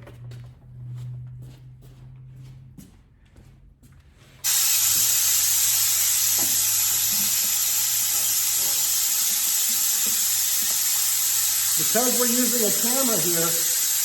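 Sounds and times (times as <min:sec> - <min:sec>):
compressed air hiss: 0:04.4 - 0:14.0.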